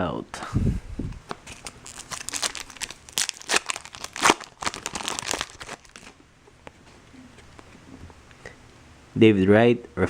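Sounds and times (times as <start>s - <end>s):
foil wrapper crinkling and tearing: 1.4s - 6.2s.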